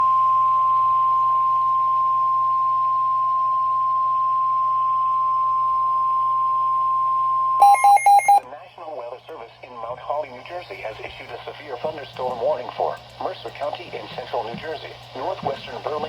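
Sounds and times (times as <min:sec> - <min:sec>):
long steady alarm tone: 0:07.6 - 0:08.4
faint radio hiss and hum: 0:07.6 - 0:16.0.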